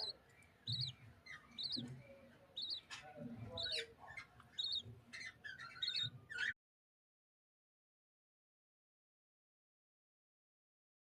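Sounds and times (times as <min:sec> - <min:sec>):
lovebirds squeaky chirps: 0:00.0 - 0:06.6.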